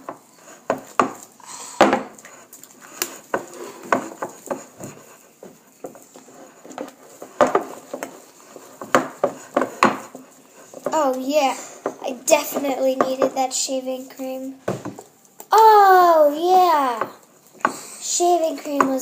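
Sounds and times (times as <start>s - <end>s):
wet clicks of slime mixing: 2.1s - 11.3s, 15.0s - 15.7s.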